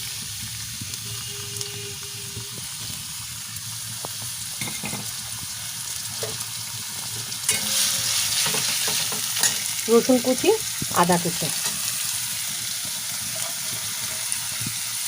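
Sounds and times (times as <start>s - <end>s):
onion sizzling in oil: 0.0s - 15.0s
spatula scraping a pan: 7.1s - 9.8s, 11.5s - 14.9s.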